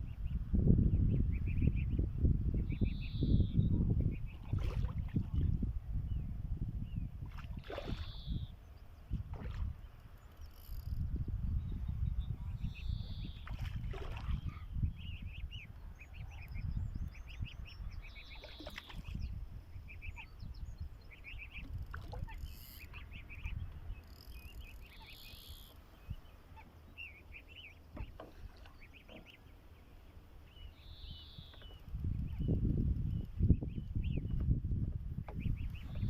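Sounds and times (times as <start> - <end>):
steady low rumble: 0.0 - 7.3, 8.4 - 18.3
small birds chirping: 0.0 - 34.6, 35.2 - 36.0.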